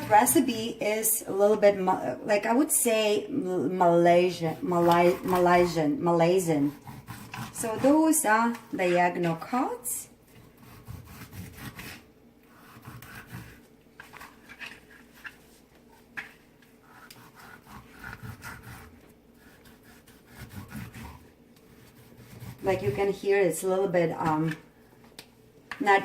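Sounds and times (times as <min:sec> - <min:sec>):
knife sawing and scraping fish skin: 0:00.0 - 0:00.7, 0:04.2 - 0:09.1, 0:10.4 - 0:15.4, 0:16.8 - 0:23.2.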